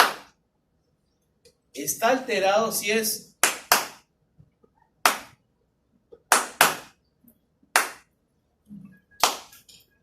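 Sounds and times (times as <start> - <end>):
sharp hand claps: 0.0 - 0.3, 3.4 - 4.0, 5.0 - 5.4, 6.2 - 7.0, 7.8 - 8.1, 9.2 - 9.7.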